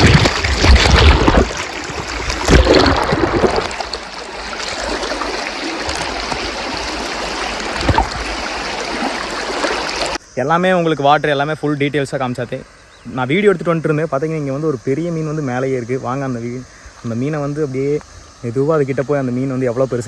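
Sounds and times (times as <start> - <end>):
waterfall pouring and splashing: 0.0 - 10.2
low thuds on microphone: 7.7 - 8.4.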